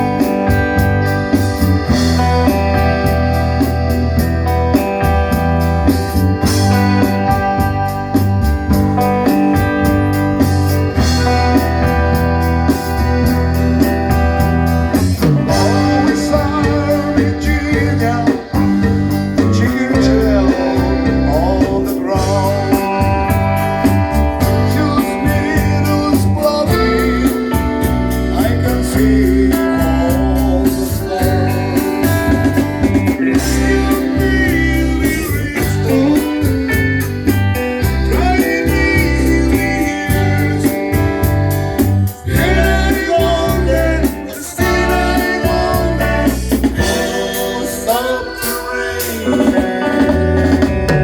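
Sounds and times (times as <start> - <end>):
guitar: 0.0 - 51.0
steady drum beat: 0.0 - 51.0
person singing: 10.4 - 41.4, 42.1 - 51.0.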